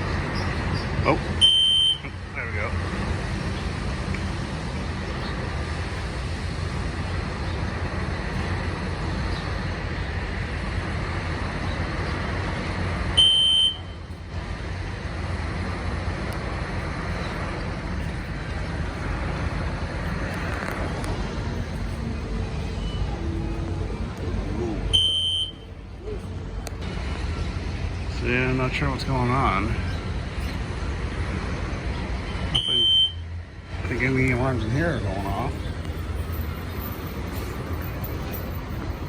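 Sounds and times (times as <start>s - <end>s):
street traffic noise: 0.0s - 39.0s
fire alarm horn blast: 1.4s - 2.1s, 13.2s - 14.0s, 24.9s - 25.7s.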